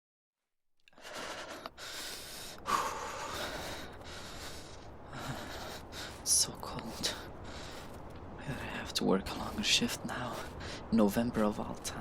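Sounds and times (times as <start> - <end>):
person breathing heavily: 0.9 - 10.9.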